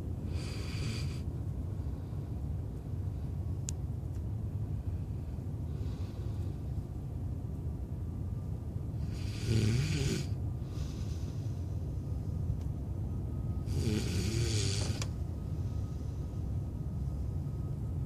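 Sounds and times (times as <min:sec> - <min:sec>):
steady low rumble: 0:00.0 - 0:18.0
man snoring: 0:00.3 - 0:01.2, 0:09.0 - 0:10.4, 0:13.7 - 0:15.1.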